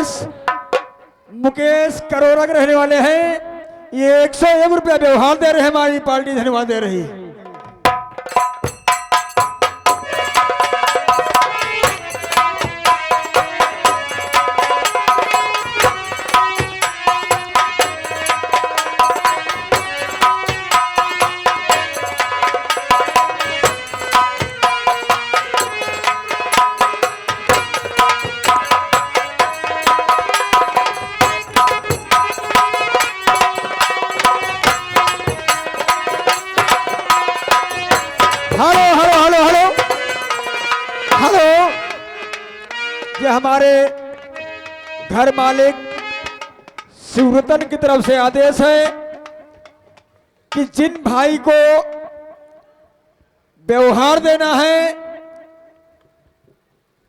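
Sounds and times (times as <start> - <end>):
fast hand drum strokes: 0.0 - 1.1, 7.4 - 49.7
sustained melody line: 8.6 - 46.5.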